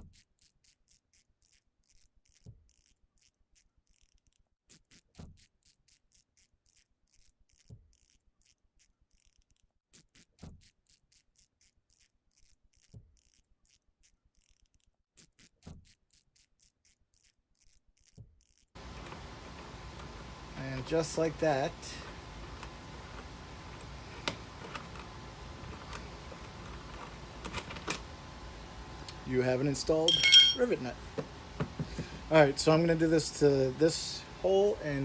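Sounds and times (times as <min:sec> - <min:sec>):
steady hiss: 0:18.8 - 0:27.3.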